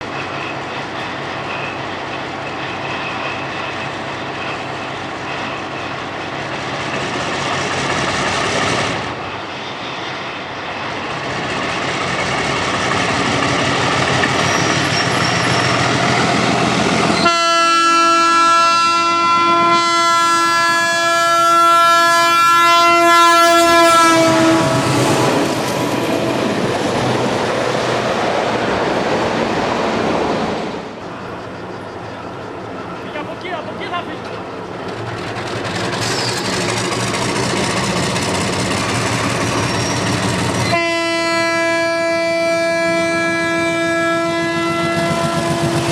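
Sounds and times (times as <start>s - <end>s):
diesel locomotive engine chugging: 0.0s - 18.6s, 30.8s - 45.9s
locomotive air horn blast: 17.2s - 25.4s, 40.7s - 45.9s.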